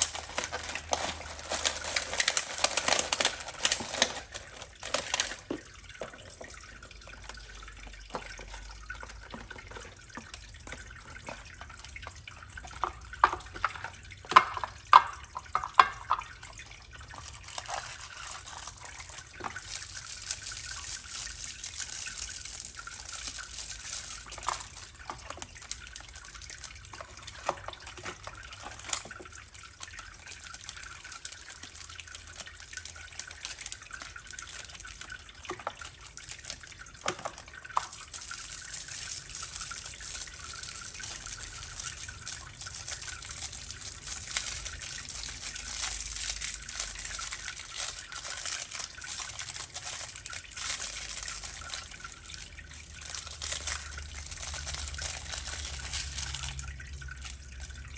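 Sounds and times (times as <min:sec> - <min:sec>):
small drips and clicks: 0:00.0 - 0:57.9
water trickling and splashing: 0:00.0 - 0:57.9.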